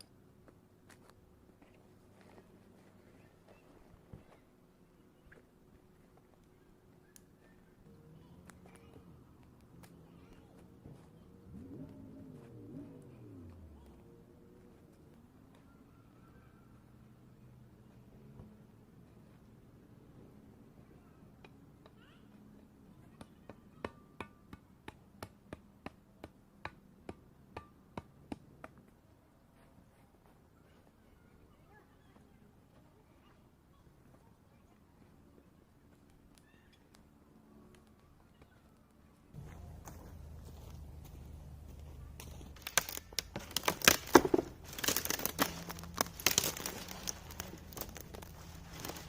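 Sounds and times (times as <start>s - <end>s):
material crinkling and crackling: 39.4s - 49.0s.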